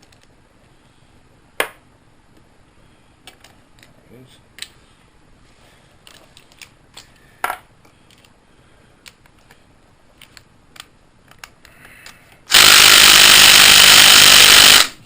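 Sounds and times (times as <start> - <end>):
impact wrench running: 12.5 - 15.0.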